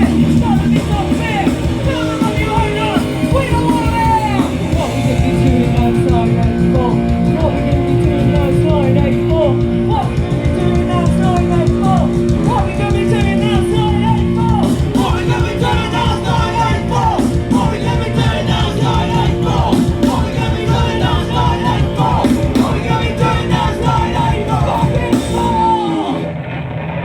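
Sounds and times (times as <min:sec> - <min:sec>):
punk rock band playing: 0:00.0 - 0:27.0
shouted vocals: 0:09.8 - 0:26.3.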